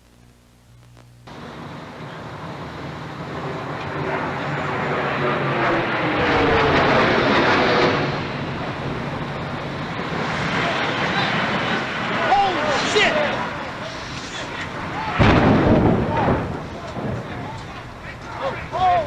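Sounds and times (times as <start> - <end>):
jet airliner flying overhead: 1.3 - 19.0.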